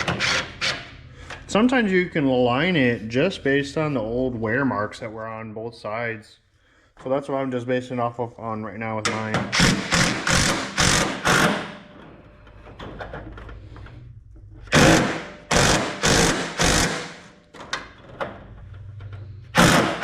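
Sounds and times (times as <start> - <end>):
power tool rattling bursts: 9.5 - 11.7, 14.7 - 17.3, 19.6 - 20.0.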